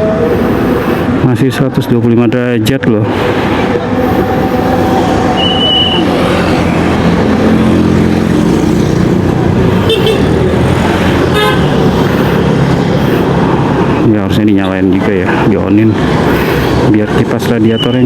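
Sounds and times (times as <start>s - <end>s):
road and traffic noise: 0.0s - 18.0s
scooter engine running: 3.4s - 13.8s.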